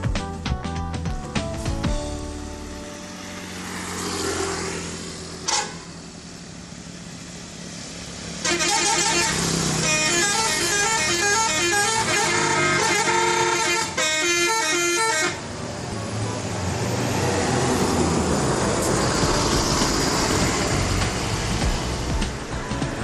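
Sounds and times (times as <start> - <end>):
vehicle rumble and road noise: 0.0 - 23.0
multi-tone bus air horn tune: 5.4 - 6.0, 8.4 - 15.6.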